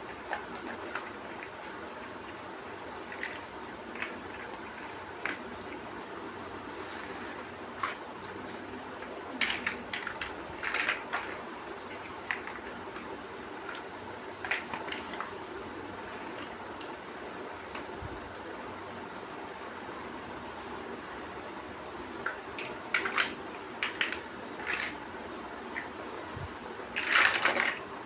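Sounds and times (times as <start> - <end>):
plastic bricks clicking and rattling: 0.1 - 5.8, 9.4 - 13.1, 13.7 - 15.3, 22.2 - 25.0, 27.0 - 27.9.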